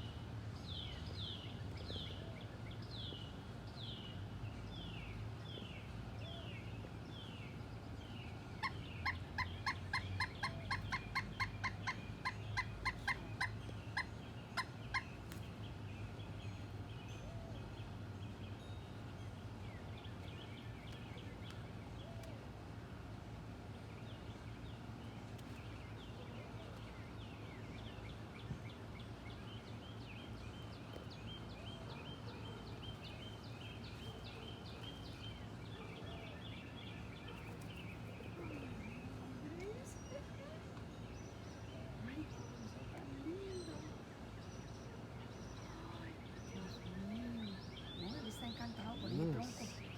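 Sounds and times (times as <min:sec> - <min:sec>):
birds chirping: 0:23.7 - 0:49.9.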